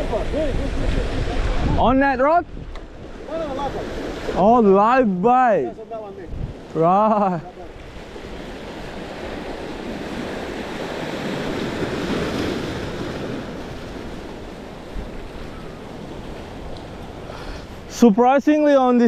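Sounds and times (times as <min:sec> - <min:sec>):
wind buffeting microphone: 0:00.0 - 0:06.8, 0:07.5 - 0:17.9
ocean surf washing in: 0:00.0 - 0:19.0.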